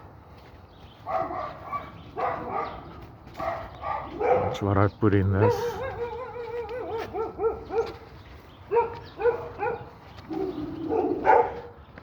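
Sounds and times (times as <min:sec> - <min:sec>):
dog yapping: 0:01.1 - 0:04.6, 0:05.4 - 0:08.0, 0:08.7 - 0:11.7.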